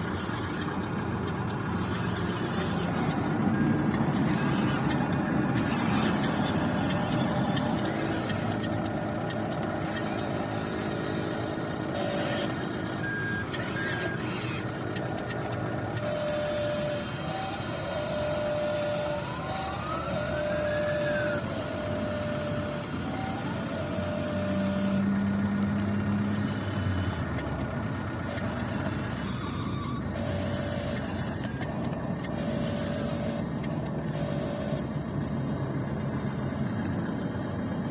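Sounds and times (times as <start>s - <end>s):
model truck engine noise: 0.0s - 37.9s
reversing alarm beeping: 1.8s - 25.1s, 28.3s - 34.9s.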